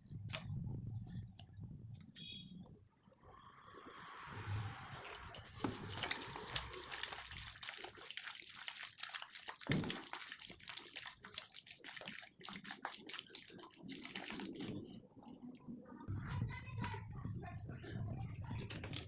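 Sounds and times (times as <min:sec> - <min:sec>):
faint high whine: 0:00.0 - 0:06.7
curry crackling and sloshing in pan: 0:04.2 - 0:15.0.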